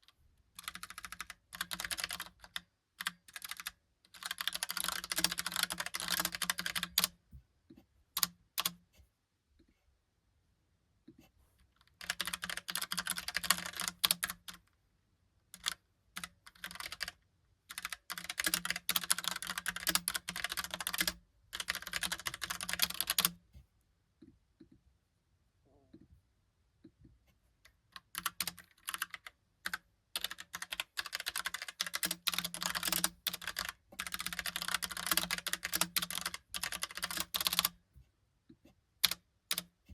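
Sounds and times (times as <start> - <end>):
keyboard keystrokes clacking: 28.1 - 37.7.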